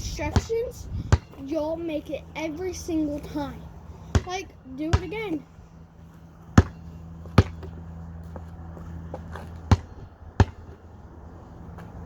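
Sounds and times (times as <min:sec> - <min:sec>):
steady low hum: 0:00.0 - 0:12.0
basketball bouncing thumps: 0:00.2 - 0:01.4, 0:04.1 - 0:05.3, 0:06.6 - 0:07.8, 0:09.1 - 0:10.9.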